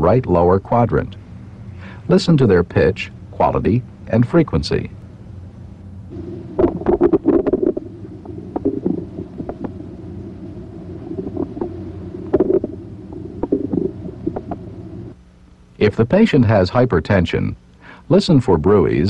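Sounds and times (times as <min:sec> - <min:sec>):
steady low hum: 0:00.0 - 0:19.0
bowel clicks and gurgles: 0:06.6 - 0:09.8, 0:11.1 - 0:14.7.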